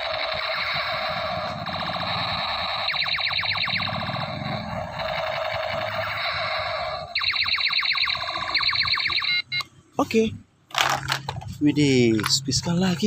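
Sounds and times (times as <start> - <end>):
toy space gun firing effect: 0.0 - 9.4.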